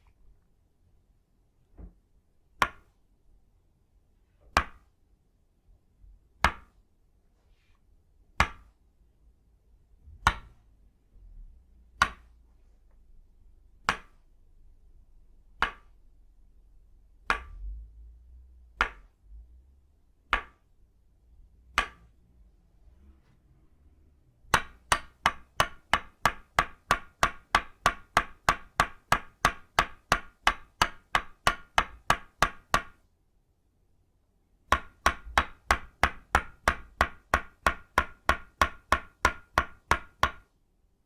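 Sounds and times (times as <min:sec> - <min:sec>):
mallet tapping wooden wedge: 0:02.6 - 0:02.9, 0:04.5 - 0:04.8, 0:06.4 - 0:06.8, 0:08.4 - 0:08.7, 0:10.2 - 0:10.6, 0:12.0 - 0:12.3, 0:13.8 - 0:14.2, 0:15.6 - 0:16.0, 0:17.2 - 0:17.7, 0:18.8 - 0:19.2, 0:20.3 - 0:20.7, 0:21.7 - 0:22.1, 0:24.5 - 0:33.0, 0:34.7 - 0:40.5.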